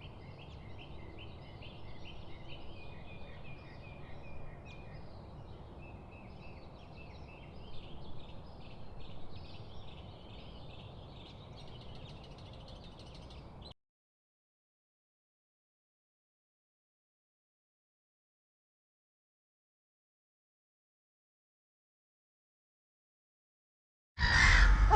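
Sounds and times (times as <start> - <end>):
songbirds singing and chirping: 0.0 - 13.8.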